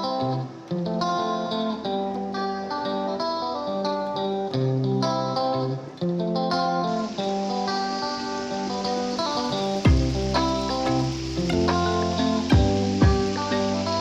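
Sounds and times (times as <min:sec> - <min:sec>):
plucked guitar tune: 0:00.0 - 0:14.0.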